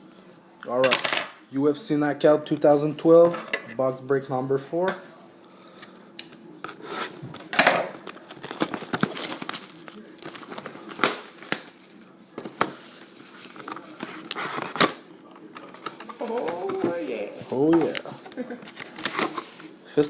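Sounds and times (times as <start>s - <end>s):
plastic packaging crinkling and tearing: 7.3s - 12.2s, 17.5s - 19.8s.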